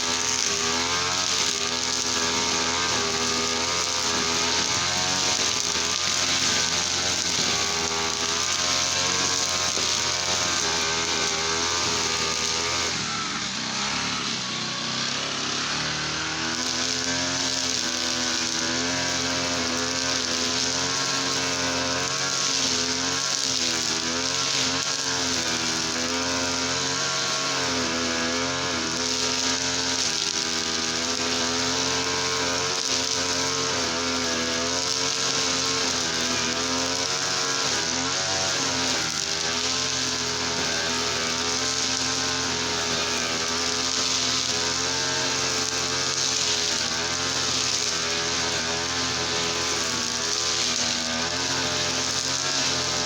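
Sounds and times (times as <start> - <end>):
brush cutter engine running: 0.0 - 53.0.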